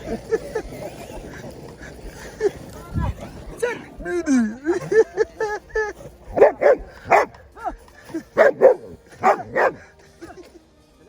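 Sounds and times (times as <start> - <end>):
dog barking: 6.3 - 7.4, 8.4 - 9.9
dog yipping: 6.3 - 7.4, 8.4 - 9.8.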